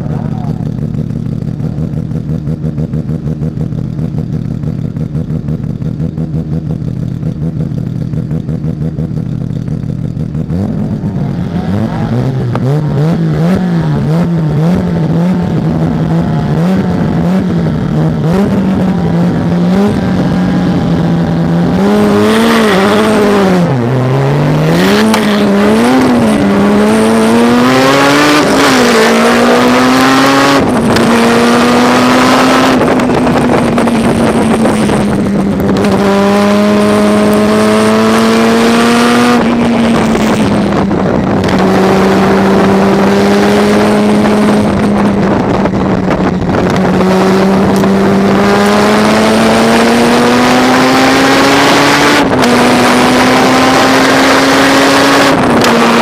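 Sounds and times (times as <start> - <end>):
rotary engine revving: 10.1 - 56.0.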